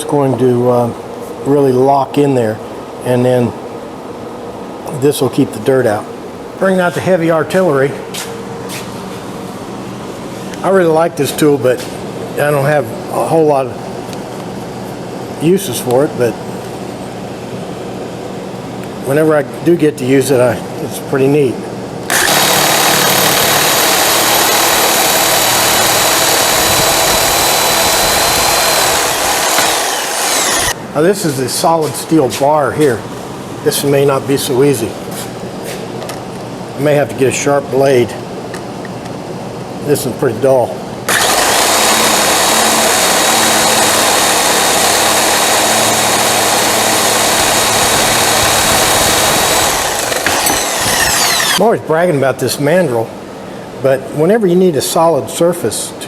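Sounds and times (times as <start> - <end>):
power saw cutting steel: 22.1 - 30.8, 41.1 - 51.6.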